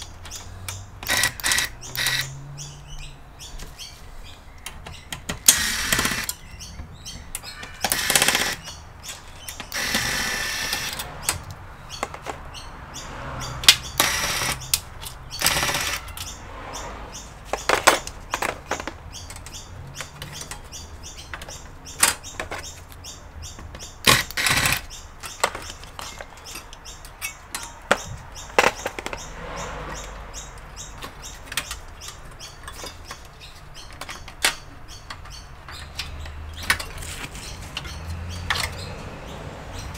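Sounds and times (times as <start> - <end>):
tools and screws clicking: 0.0 - 2.4, 4.6 - 6.4, 7.3 - 12.4, 13.6 - 16.4, 23.6 - 29.2, 29.9 - 39.1.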